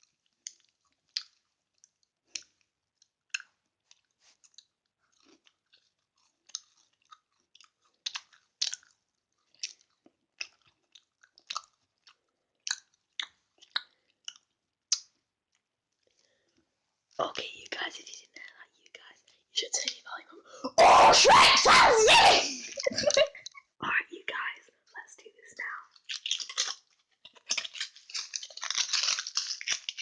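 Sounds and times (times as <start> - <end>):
person chewing soft food: 0.0 - 17.2, 25.9 - 30.0.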